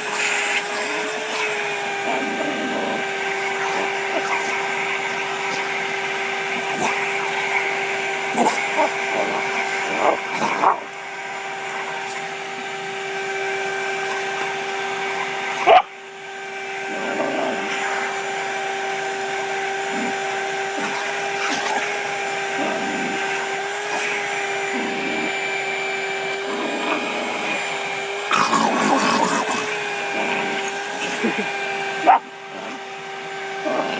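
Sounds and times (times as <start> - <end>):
dogs barking: 0.0 - 13.0, 13.9 - 16.0, 16.8 - 18.8, 19.6 - 25.6, 26.3 - 32.9, 33.6 - 33.9
vacuum cleaner humming: 0.0 - 33.9.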